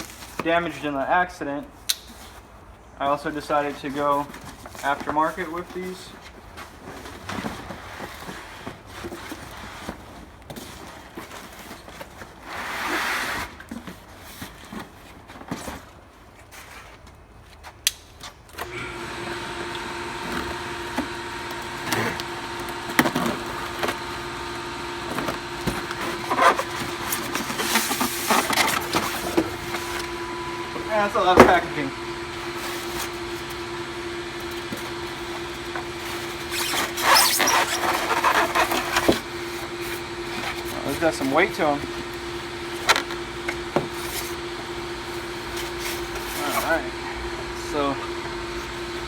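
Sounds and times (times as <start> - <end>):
mechanical hum: 0.0 - 49.0
cardboard box being handled: 21.4 - 46.9.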